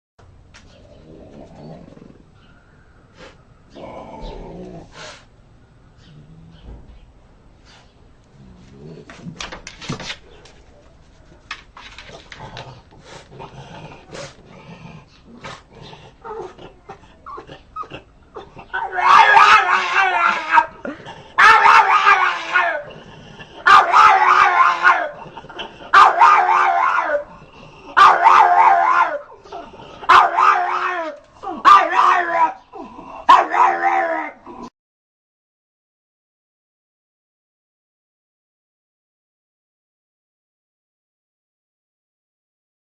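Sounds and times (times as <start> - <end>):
dog growling and grumbling: 0.7 - 2.4, 3.7 - 5.1, 8.3 - 9.8, 11.9 - 34.7.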